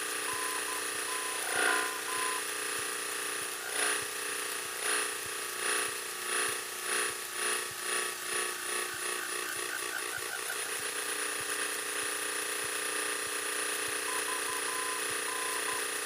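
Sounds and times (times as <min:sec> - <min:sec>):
piston engine drone: 0:00.0 - 0:16.0
short beeps: 0:00.3 - 0:02.5, 0:14.1 - 0:15.8.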